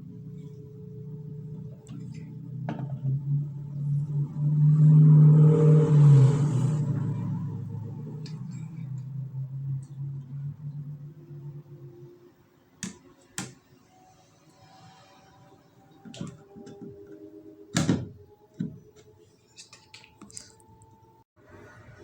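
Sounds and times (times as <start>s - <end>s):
low hum: 0.0s - 12.7s.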